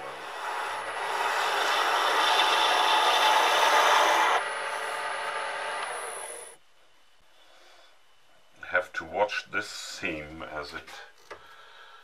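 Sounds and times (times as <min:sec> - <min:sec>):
lathe tool rasping scrape on wood: 0:00.0 - 0:06.5.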